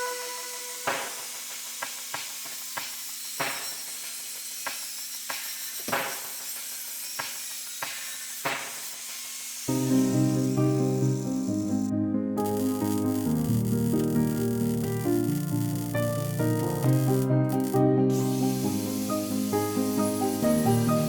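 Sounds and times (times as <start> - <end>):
steady hiss: 0.0 - 7.4, 8.0 - 21.0
hammer striking steel: 0.0 - 8.9.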